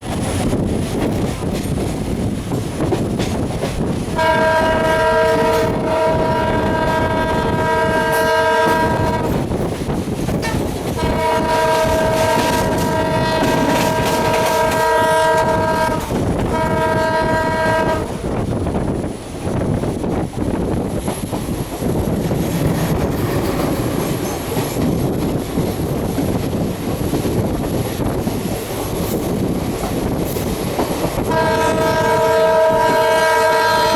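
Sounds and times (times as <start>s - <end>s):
train rumble and clickety-clack: 0.0s - 33.9s
locomotive air horn: 4.2s - 9.4s, 11.0s - 18.2s, 31.3s - 33.9s.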